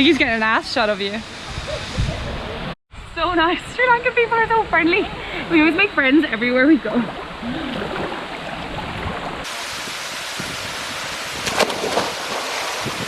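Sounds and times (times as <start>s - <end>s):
rushing falling water: 7.1s - 13.0s.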